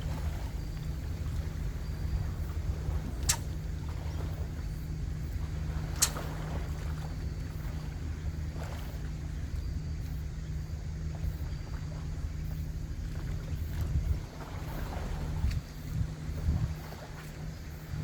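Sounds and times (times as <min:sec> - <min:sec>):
sea rumble: 0:00.0 - 0:18.0
wind: 0:00.0 - 0:18.0
sharp click: 0:03.2 - 0:03.5, 0:06.0 - 0:06.3.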